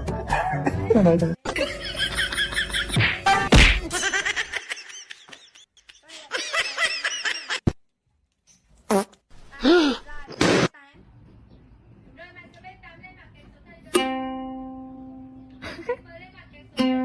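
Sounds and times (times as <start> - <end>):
high-pitched laughter: 3.9 - 7.6.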